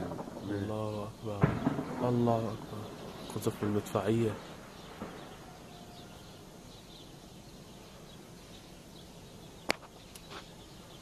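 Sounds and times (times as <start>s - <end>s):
sharp crack: 0.0s - 5.4s
faint bird chirps: 0.0s - 11.0s.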